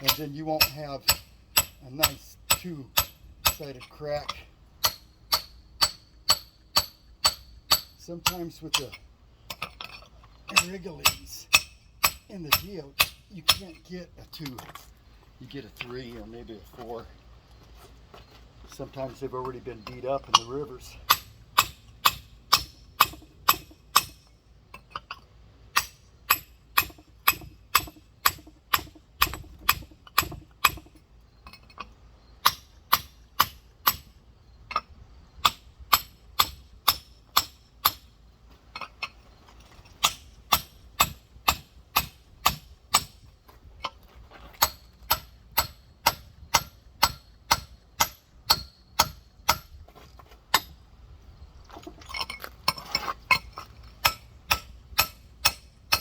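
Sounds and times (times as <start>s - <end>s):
hammer tapping on rock: 0.0s - 3.7s, 25.8s - 31.0s.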